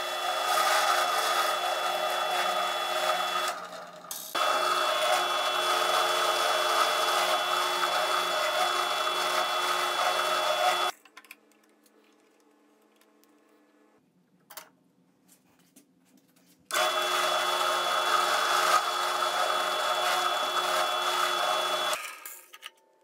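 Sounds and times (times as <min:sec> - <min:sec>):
drill press motor whine: 0:00.0 - 0:10.9, 0:16.7 - 0:22.0
end mill cutting plastic: 0:00.0 - 0:10.9, 0:16.7 - 0:22.3.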